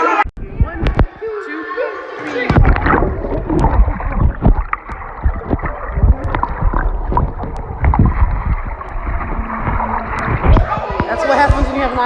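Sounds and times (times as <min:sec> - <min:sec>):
low thumps: 0:02.5 - 0:12.0
underwater bubbling and churning: 0:02.5 - 0:12.0.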